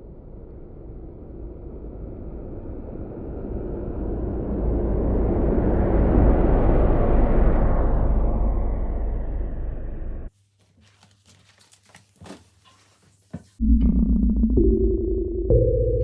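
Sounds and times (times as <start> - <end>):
deep rumbling: 0.0 - 10.3, 13.6 - 16.0.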